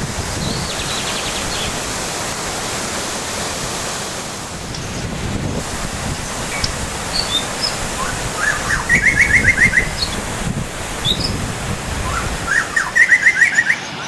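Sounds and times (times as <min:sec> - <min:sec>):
steady rushing noise: 0:00.0 - 0:14.0
songbird singing: 0:00.3 - 0:01.9, 0:06.0 - 0:14.0.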